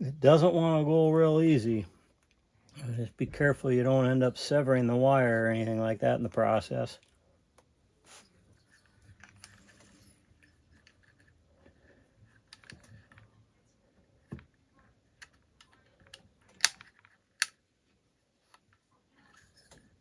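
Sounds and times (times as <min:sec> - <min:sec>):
small parts clicking: 0:15.2 - 0:17.6.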